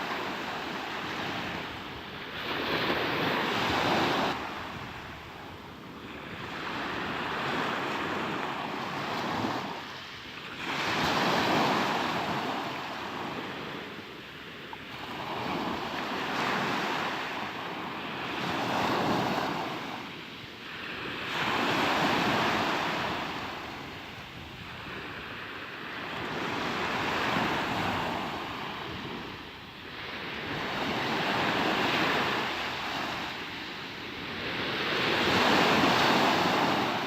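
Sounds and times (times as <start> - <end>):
sea waves washing onto shore: 0.0 - 37.0.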